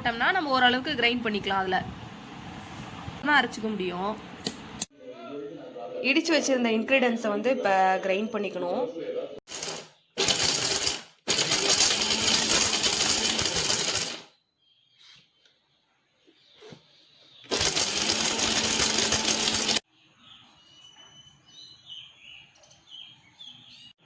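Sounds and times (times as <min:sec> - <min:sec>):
electric mixer grinder grinding: 0:09.5 - 0:14.3, 0:17.5 - 0:19.8
birds chirping faintly: 0:14.4 - 0:17.5, 0:19.9 - 0:24.0.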